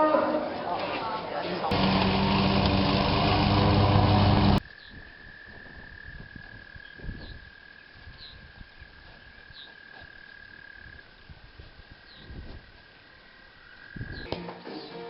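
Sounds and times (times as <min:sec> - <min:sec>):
music: 0:14.3 - 0:15.0.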